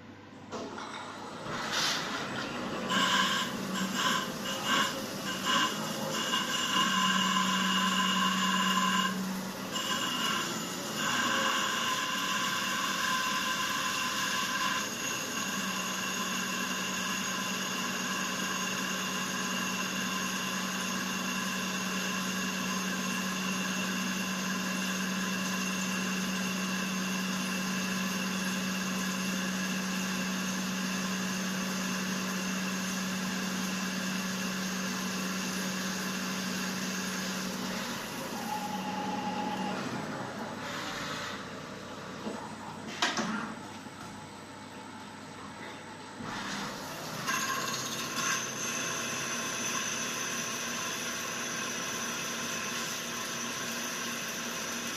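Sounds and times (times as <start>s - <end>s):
lathe motors whining: 1.4s - 43.6s.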